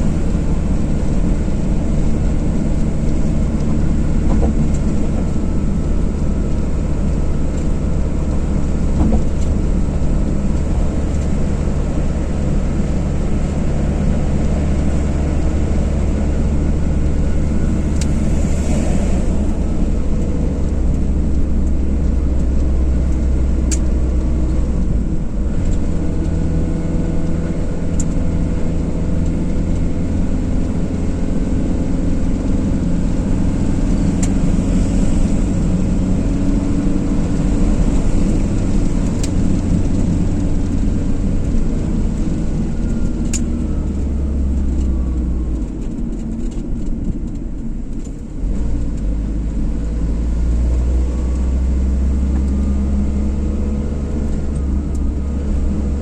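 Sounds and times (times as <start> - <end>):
car engine and tyre noise: 0.0 - 56.0.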